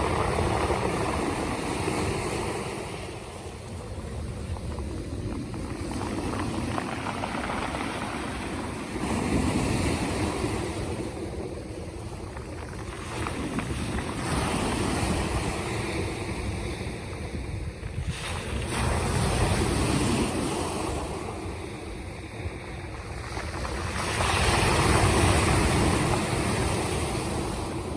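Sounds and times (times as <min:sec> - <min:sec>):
waves breaking and washing in: 0:00.0 - 0:27.9
wind buffeting microphone: 0:00.0 - 0:27.9.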